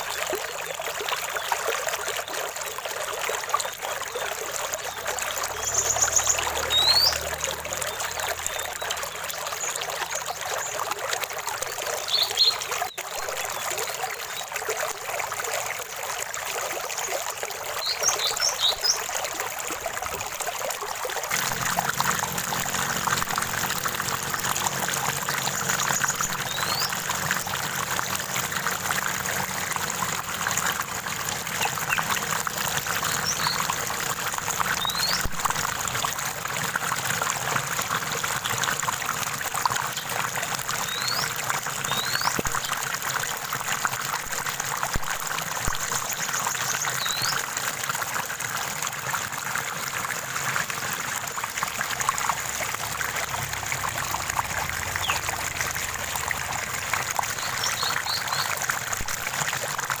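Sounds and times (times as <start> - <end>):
stream water trickling: 0.0 - 60.0
high bird chirps: 5.6 - 7.3, 25.8 - 27.0.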